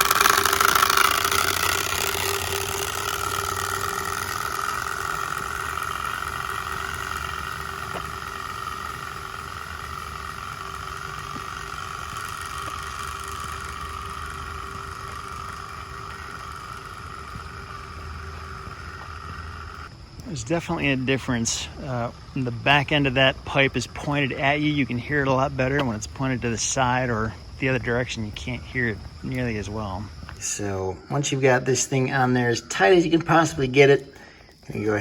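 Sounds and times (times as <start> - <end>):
plastic card flapping on bicycle spokes: 0.0 - 20.3.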